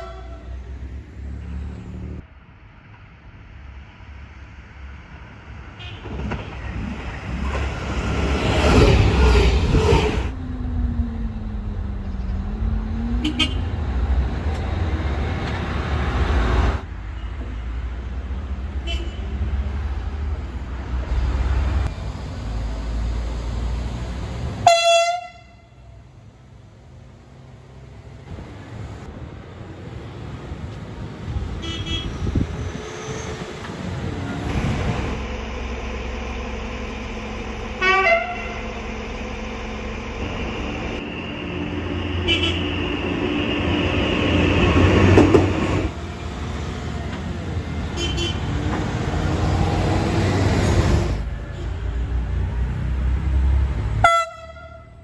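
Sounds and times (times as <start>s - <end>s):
train air horn toot: 0.0s - 0.8s, 13.2s - 13.8s, 24.6s - 25.8s, 31.6s - 32.5s, 37.7s - 39.6s, 41.5s - 43.9s, 48.0s - 48.5s, 54.0s - 55.0s
high-pitched electric train horns: 0.0s - 0.9s, 13.0s - 15.6s, 24.6s - 26.0s, 31.5s - 33.6s, 34.4s - 45.8s, 48.0s - 48.6s, 54.0s - 55.0s
train running and rumbling: 0.0s - 18.4s, 19.4s - 55.0s.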